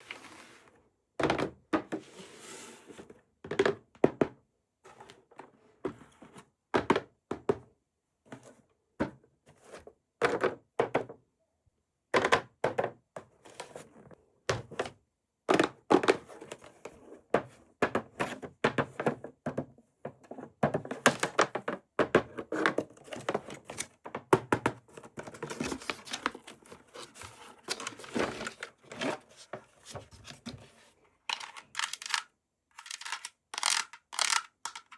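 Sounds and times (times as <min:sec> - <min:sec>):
packaging crinkling and rustling: 0:25.3 - 0:30.5.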